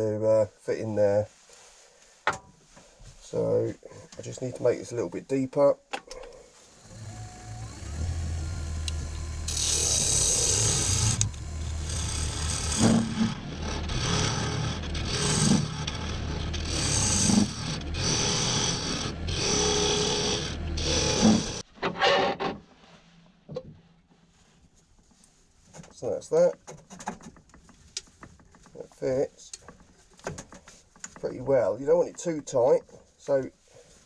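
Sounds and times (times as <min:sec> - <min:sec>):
wood lathe motor hum: 0:06.7 - 0:21.6
turning tool scraping wood: 0:06.7 - 0:22.7, 0:25.0 - 0:33.1.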